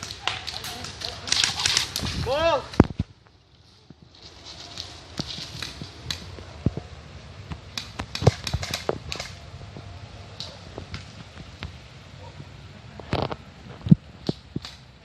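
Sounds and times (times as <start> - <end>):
steady background hiss: 0.0 - 15.0
sharp clicks and snaps: 7.5 - 9.4, 13.1 - 14.8.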